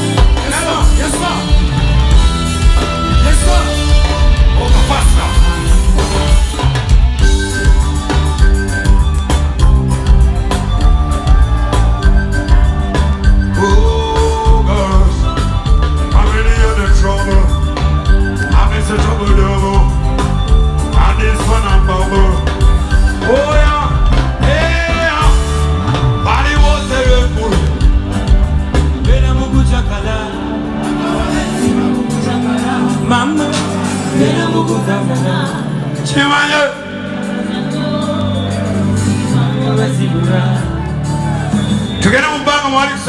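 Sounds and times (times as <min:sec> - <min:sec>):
loud music with heavy bass: 0:00.0 - 0:43.0
person singing: 0:10.0 - 0:41.5.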